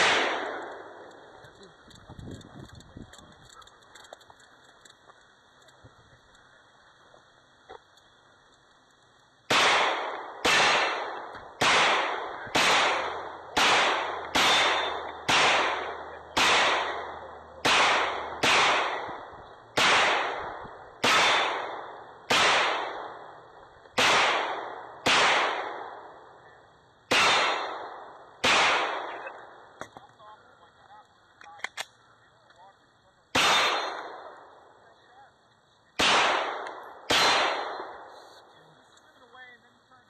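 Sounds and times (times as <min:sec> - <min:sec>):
gunshots with echo: 0:00.0 - 0:01.1, 0:09.5 - 0:23.4, 0:24.0 - 0:26.2, 0:27.1 - 0:29.6, 0:33.4 - 0:34.6, 0:36.0 - 0:38.4.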